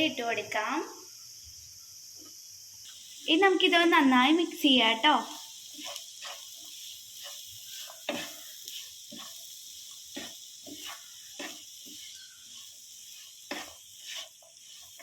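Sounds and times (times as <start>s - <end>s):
food sizzling in a pan: 0.0s - 15.0s
spoon scraping a pan: 5.1s - 15.0s.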